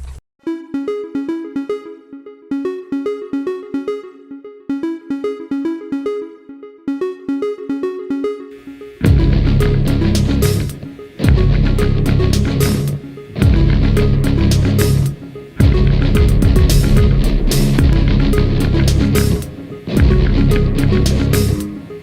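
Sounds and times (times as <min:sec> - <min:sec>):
synthesizer riff: 0:00.4 - 0:22.0
full music mix with heavy bass: 0:07.0 - 0:22.0.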